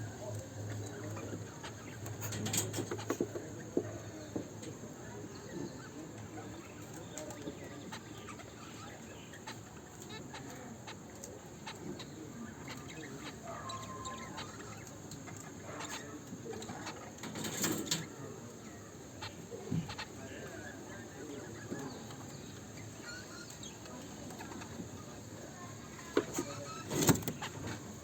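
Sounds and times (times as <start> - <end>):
cockatiels chirping: 5.4 - 18.2, 19.2 - 25.2, 25.9 - 28.0
clicks and scratches: 26.1 - 27.9.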